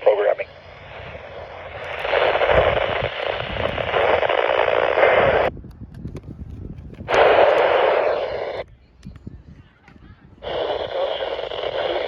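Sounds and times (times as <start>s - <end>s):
radio static hiss: 0.0s - 5.5s, 7.1s - 8.7s, 10.4s - 12.0s.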